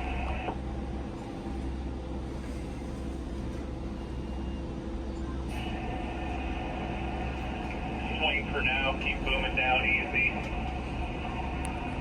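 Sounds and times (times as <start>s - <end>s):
crane machine hum: 0.0s - 12.0s
two-way radio hiss: 7.8s - 10.6s.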